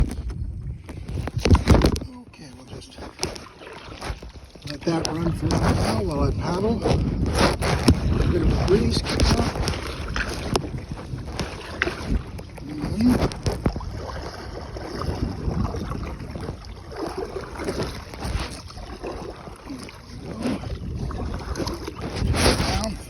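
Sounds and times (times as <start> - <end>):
wind buffeting microphone: 0.0 - 23.0
paddle splashing in water: 2.6 - 23.0.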